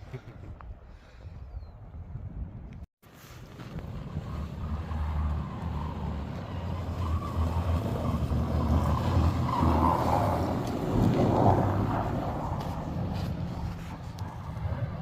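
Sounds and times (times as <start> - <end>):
road and wind noise: 0.0 - 15.0
vehicle engine drone: 3.2 - 15.0.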